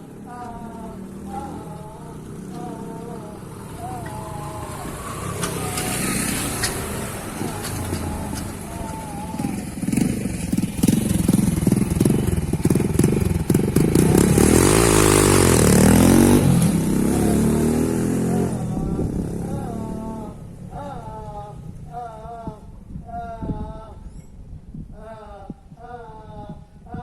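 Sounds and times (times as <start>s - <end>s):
small motorcycle engine accelerating: 1.3s - 20.4s.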